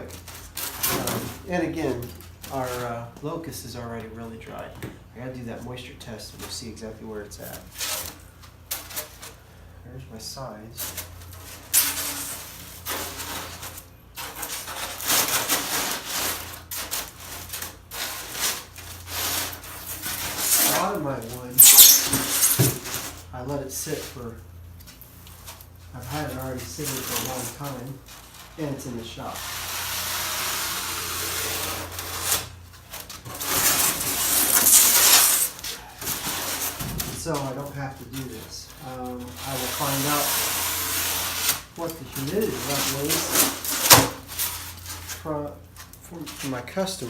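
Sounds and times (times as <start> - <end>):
rough rubbing noise: 10.8 - 23.2, 26.0 - 45.2
styrofoam scraping strokes: 10.8 - 23.3, 25.3 - 36.8, 37.4 - 45.3.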